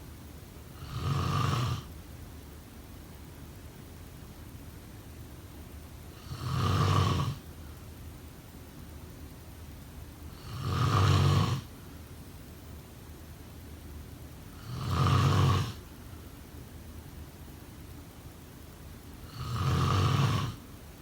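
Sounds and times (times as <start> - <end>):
loud rasping snores: 0.8 - 1.9, 6.2 - 7.4, 10.4 - 11.7, 14.6 - 15.8, 19.3 - 20.6.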